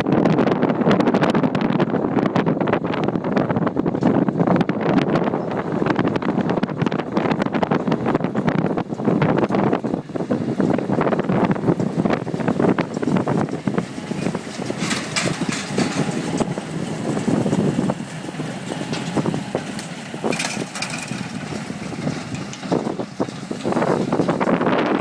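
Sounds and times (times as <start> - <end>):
tractor running: 0.0 - 25.0
wind buffeting microphone: 0.0 - 25.0.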